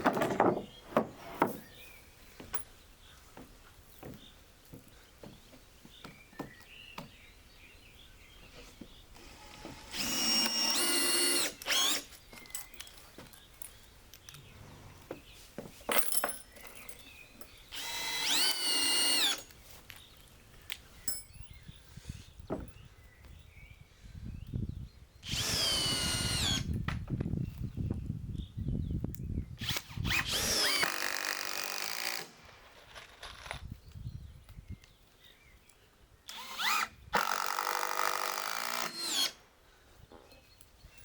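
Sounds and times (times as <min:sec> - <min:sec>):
knocks and handling noises: 0:00.0 - 0:01.8, 0:15.0 - 0:17.5
cordless drill whining: 0:09.2 - 0:12.1, 0:17.7 - 0:19.5, 0:25.2 - 0:26.7, 0:29.6 - 0:32.3, 0:36.3 - 0:39.4.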